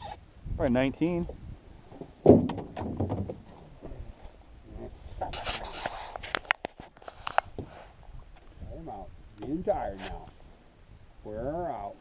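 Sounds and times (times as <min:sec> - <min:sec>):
loud thump: 0:02.2 - 0:03.4
handling noise rubbing and scraping: 0:05.1 - 0:07.9, 0:09.8 - 0:10.4.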